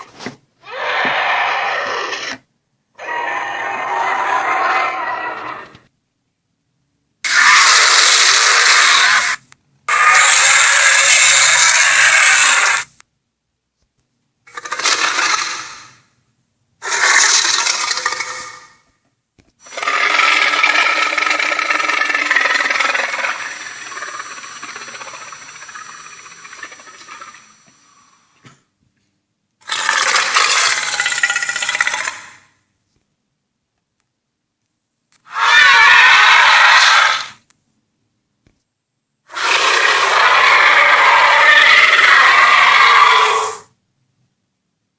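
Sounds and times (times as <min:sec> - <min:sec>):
harsh dinosaur roars: 0:00.6 - 0:02.4, 0:03.0 - 0:05.8, 0:07.3 - 0:12.9, 0:16.8 - 0:18.8, 0:19.6 - 0:27.4, 0:35.3 - 0:37.4, 0:39.3 - 0:43.7.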